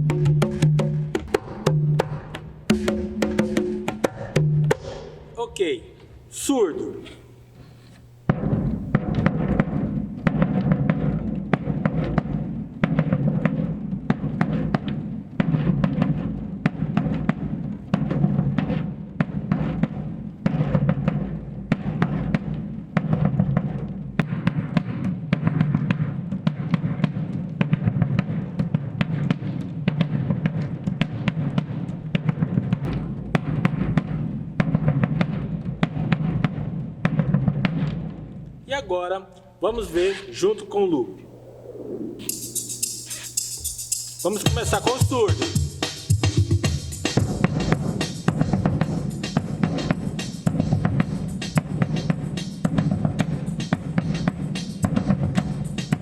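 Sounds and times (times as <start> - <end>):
bass drum booming: 8.3 - 25.9, 32.2 - 38.4.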